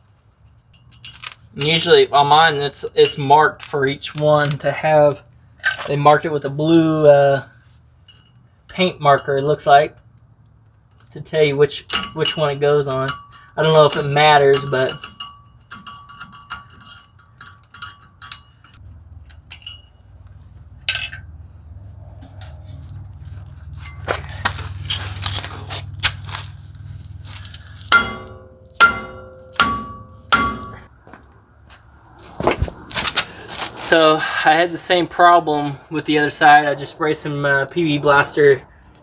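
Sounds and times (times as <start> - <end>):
metal tools clinking: 0.4 - 1.8, 8.0 - 8.6, 11.9 - 21.3, 22.3 - 30.8
ringing blows of metal on metal: 11.9 - 21.3, 23.6 - 31.0.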